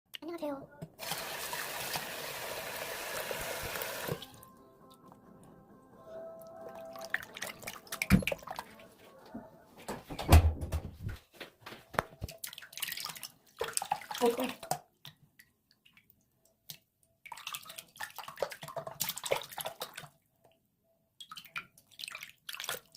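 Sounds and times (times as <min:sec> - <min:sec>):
water running: 0:01.0 - 0:05.2, 0:06.2 - 0:08.9, 0:12.2 - 0:14.8
wet clicks and squelches of soap: 0:12.0 - 0:20.6, 0:21.2 - 0:22.9.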